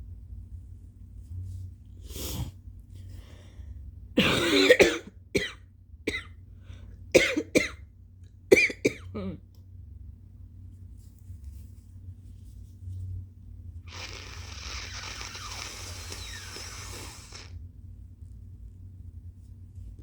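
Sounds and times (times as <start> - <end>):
person coughing wet coughs: 4.2 - 6.3, 7.2 - 7.8, 8.5 - 9.4.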